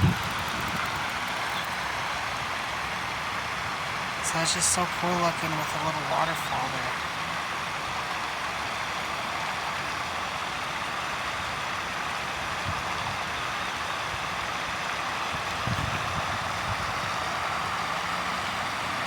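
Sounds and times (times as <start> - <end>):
waterfall splashing: 0.0 - 12.6.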